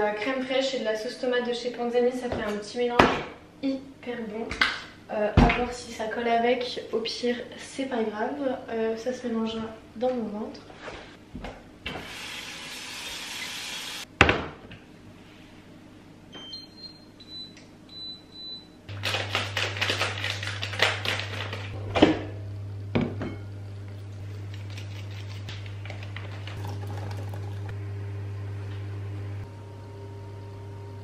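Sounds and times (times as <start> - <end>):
low electric hum: 14.0 - 31.0
appliance control panel beeps: 16.3 - 18.8.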